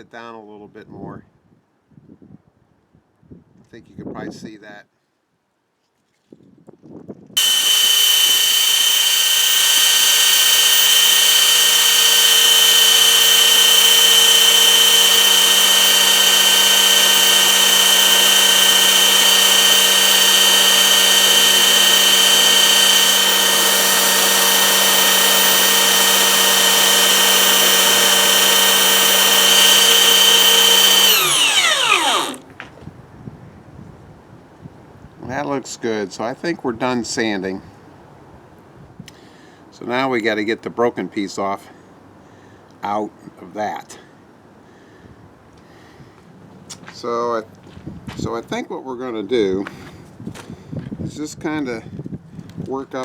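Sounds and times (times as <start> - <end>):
electric sander whining: 7.4 - 32.4.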